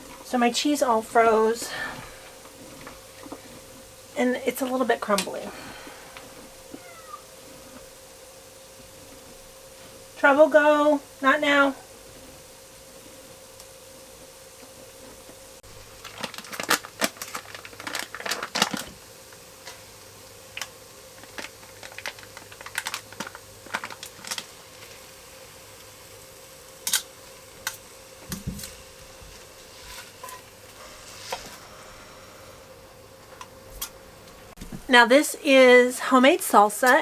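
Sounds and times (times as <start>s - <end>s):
faint steady hum: 0.0s - 37.0s
kitchen clicks and taps: 26.9s - 28.8s.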